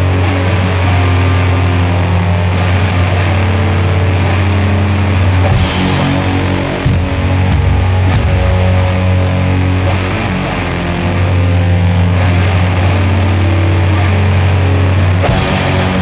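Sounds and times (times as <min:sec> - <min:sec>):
distorted guitars and bass: 0:00.0 - 0:16.0
cymbal hits: 0:05.5 - 0:09.2, 0:15.3 - 0:16.0.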